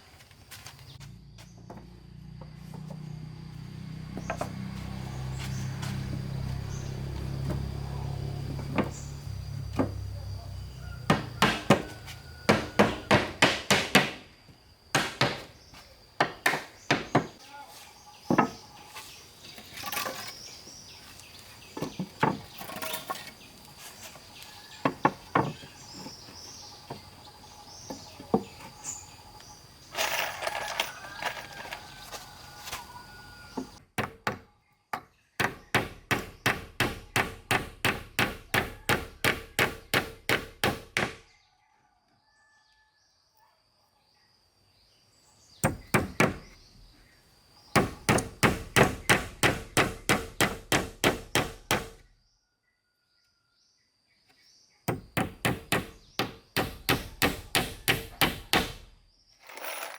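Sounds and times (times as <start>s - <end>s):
hammer striking wood: 11.1s - 14.3s, 15.0s - 15.5s, 16.2s - 17.4s, 33.5s - 41.2s, 45.6s - 46.6s, 47.8s - 52.0s, 54.9s - 58.9s.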